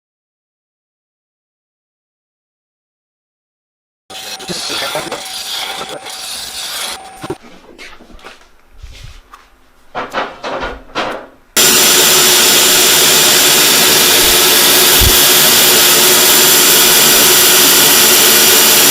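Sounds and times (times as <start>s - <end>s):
lathe tool cutting wood: 4.1s - 7.4s, 11.6s - 18.9s.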